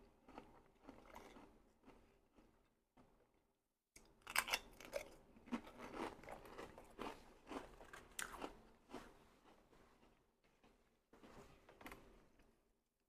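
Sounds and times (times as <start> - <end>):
crunching and chewing: 0.1 - 2.6, 4.0 - 10.2.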